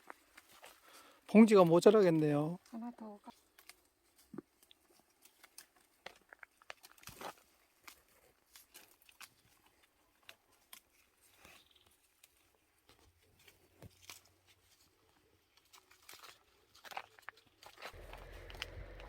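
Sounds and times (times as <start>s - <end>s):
leaves rustling: 6.7s - 19.0s.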